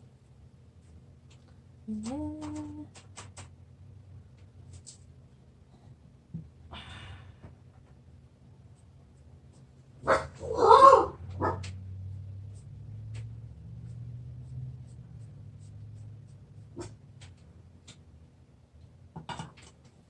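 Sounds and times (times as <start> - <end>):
dog barking: 10.0 - 11.7.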